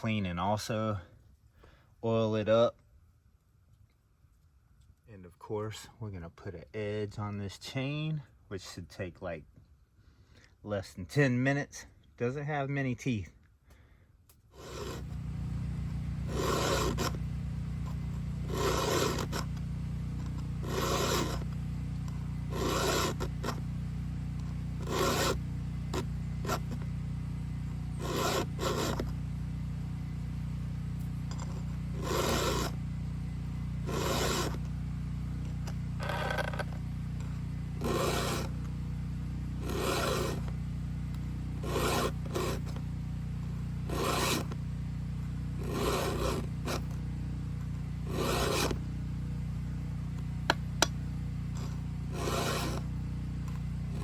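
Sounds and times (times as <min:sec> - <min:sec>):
steady low hum: 0:12.9 - 0:54.0
hand file rasping on chainsaw chain: 0:14.6 - 0:15.3, 0:16.2 - 0:17.2, 0:17.8 - 0:23.7, 0:24.4 - 0:26.8, 0:27.9 - 0:29.1, 0:31.3 - 0:32.8, 0:33.8 - 0:34.7, 0:36.0 - 0:38.8, 0:39.6 - 0:40.6, 0:41.6 - 0:42.8, 0:43.8 - 0:44.6, 0:45.6 - 0:47.0, 0:48.0 - 0:48.8, 0:51.6 - 0:54.0.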